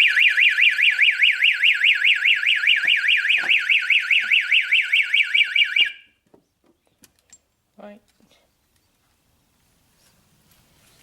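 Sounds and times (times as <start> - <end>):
fire alarm warbling: 0.0 - 6.1.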